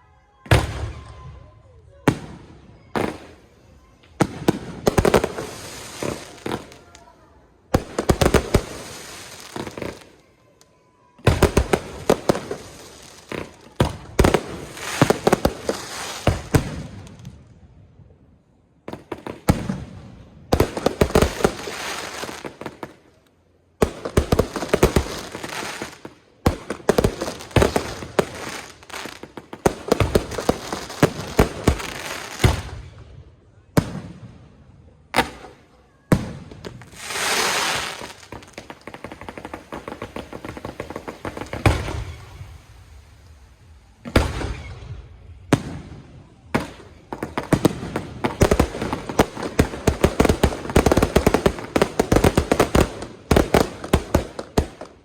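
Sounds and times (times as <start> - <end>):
fireworks bangs and crackling: 0.1 - 55.0
smooth rushing hiss: 38.9 - 44.0.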